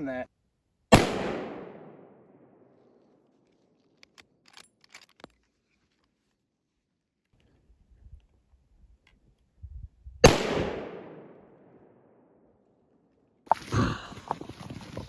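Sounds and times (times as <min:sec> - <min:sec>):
rifle shot echoing: 0:00.9 - 0:02.4, 0:10.2 - 0:11.7.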